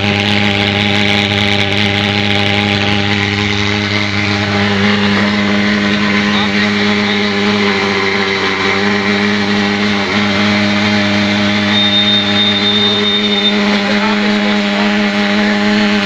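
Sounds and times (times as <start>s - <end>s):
fogging machine droning: 0.0s - 16.0s
faint high whistle: 11.7s - 13.6s.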